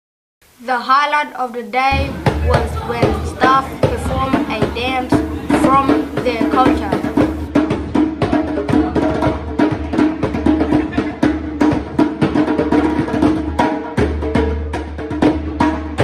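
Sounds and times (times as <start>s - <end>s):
upbeat dance music: 1.9s - 7.5s
rapid wooden percussion strikes: 1.9s - 16.0s.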